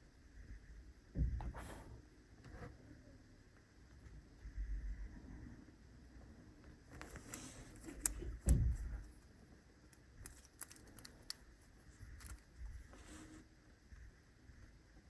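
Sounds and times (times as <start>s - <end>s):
hands handling wires: 6.9s - 13.4s.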